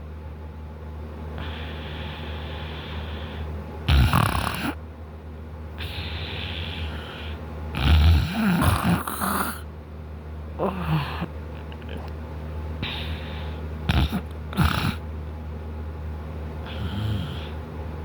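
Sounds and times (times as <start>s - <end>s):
steady low hum: 0.0s - 18.0s
breathy airflow: 1.3s - 4.8s, 5.8s - 9.7s, 12.8s - 15.0s, 16.6s - 17.7s
man snoring: 3.8s - 4.8s, 5.8s - 9.6s, 10.6s - 12.1s, 13.9s - 15.0s, 16.6s - 17.6s.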